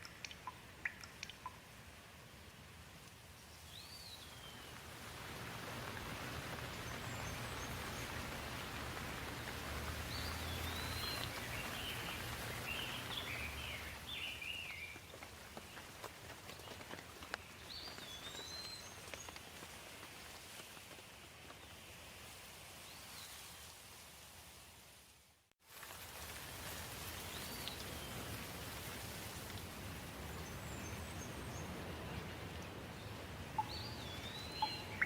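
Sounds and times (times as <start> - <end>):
steady rain falling: 0.0 - 35.0
songbirds chirping: 3.4 - 19.6, 30.2 - 35.0.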